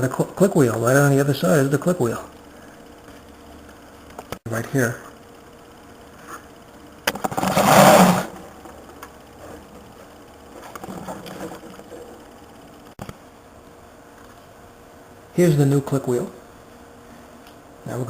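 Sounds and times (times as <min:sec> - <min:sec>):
loud rustling: 0:07.2 - 0:09.6.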